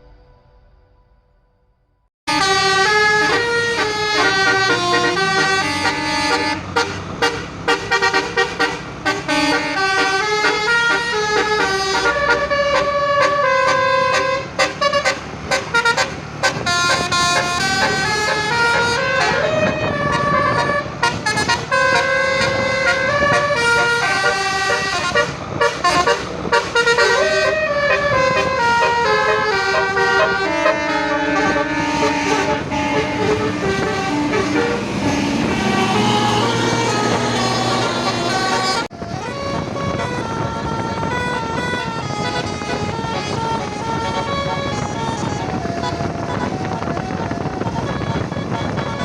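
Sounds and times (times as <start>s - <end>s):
multi-tone bus air horn melodies: 2.3s - 49.0s.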